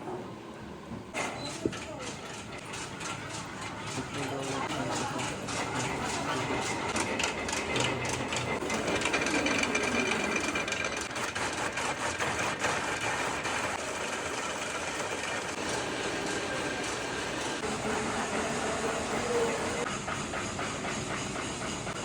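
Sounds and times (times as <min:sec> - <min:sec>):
small machine clattering: 0:01.2 - 0:15.6.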